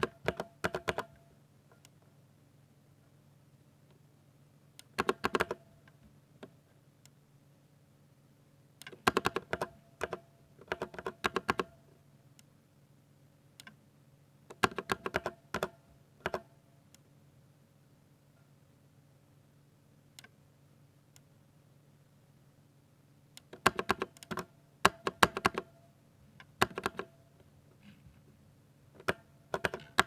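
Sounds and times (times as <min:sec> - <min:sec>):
mechanical keyboard typing: 0:00.0 - 0:01.2, 0:04.8 - 0:05.6, 0:08.8 - 0:11.8, 0:14.5 - 0:16.5, 0:23.4 - 0:25.8, 0:26.5 - 0:27.2, 0:29.0 - 0:30.0.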